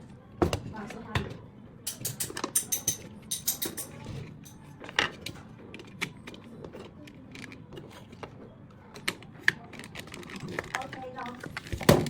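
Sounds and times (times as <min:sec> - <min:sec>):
small sharp clicks and clinks: 0:01.9 - 0:04.6.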